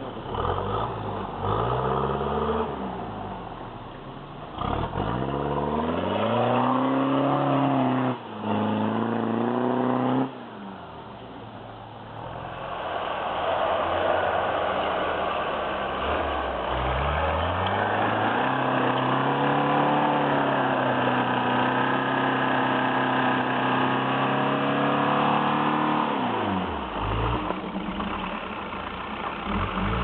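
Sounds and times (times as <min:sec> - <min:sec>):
vehicle engine revving hard: 0:00.2 - 0:03.4, 0:04.5 - 0:10.5, 0:12.4 - 0:28.4, 0:29.4 - 0:30.0.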